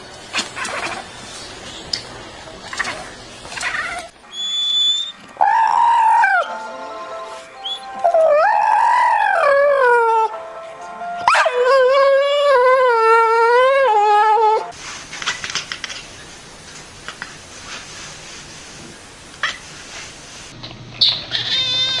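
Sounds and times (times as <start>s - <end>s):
dog howling: 3.6s - 6.5s, 7.6s - 10.4s, 11.2s - 14.7s.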